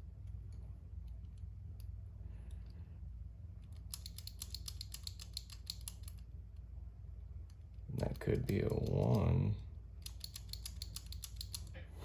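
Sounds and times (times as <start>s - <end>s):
padlock dial clicking: 3.7s - 6.2s, 10.0s - 11.7s.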